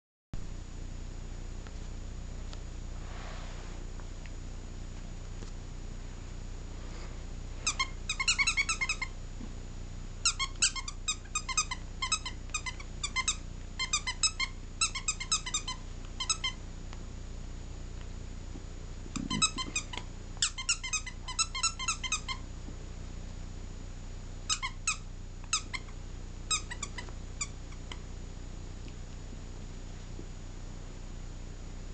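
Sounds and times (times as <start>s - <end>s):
squeaky toy squeaking: 7.7s - 9.1s, 10.2s - 16.6s, 19.2s - 22.4s, 24.5s - 25.9s, 26.5s - 28.0s.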